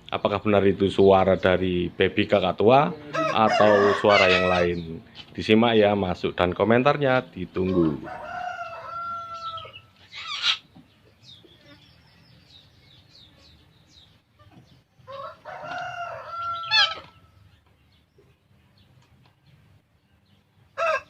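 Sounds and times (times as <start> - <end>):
small birds chirping: 0.0 - 21.0
rooster crowing: 3.1 - 4.8, 7.7 - 9.8, 15.1 - 17.2, 20.8 - 21.0.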